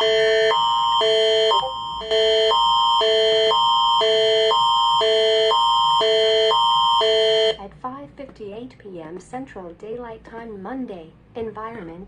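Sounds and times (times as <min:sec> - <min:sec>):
emergency alert alarm chords: 0:00.0 - 0:07.6.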